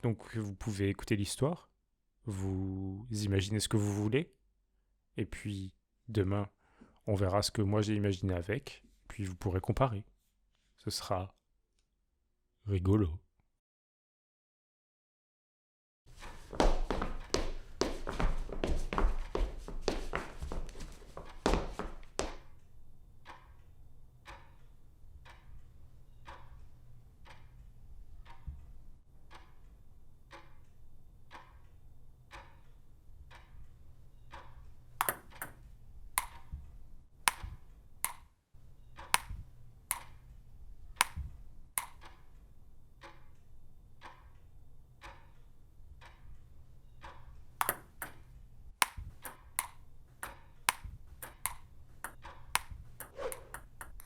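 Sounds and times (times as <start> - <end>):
bright pinging clicks: 37.3 - 40.3, 40.9 - 42.2.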